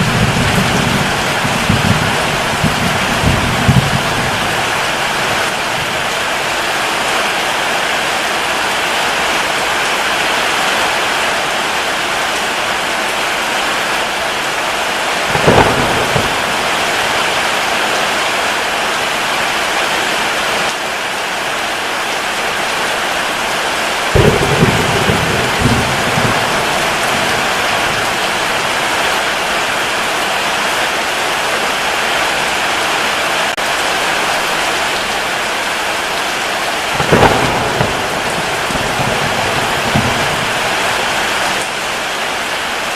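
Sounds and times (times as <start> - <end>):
thunderclap: 0.0 - 6.2, 15.2 - 17.7, 24.0 - 29.5, 36.8 - 41.8
steady rain falling: 0.0 - 42.9.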